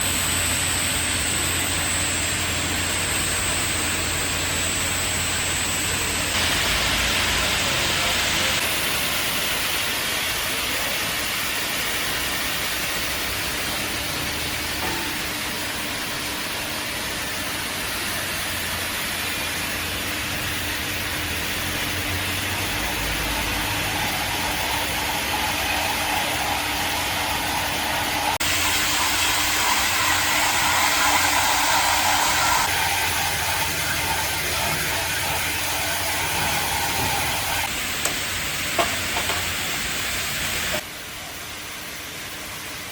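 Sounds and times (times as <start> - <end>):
machine hum: 12.9 - 40.8.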